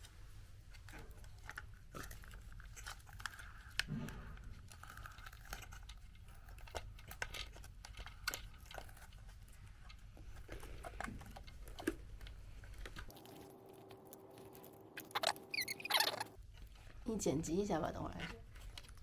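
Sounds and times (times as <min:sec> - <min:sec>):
plastic parts clicking: 0:00.8 - 0:13.4, 0:18.2 - 0:19.0.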